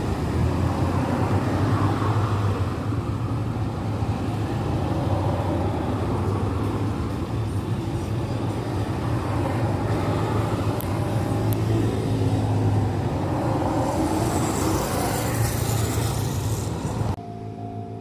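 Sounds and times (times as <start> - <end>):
electric train rumbling past: 8.8 - 18.0.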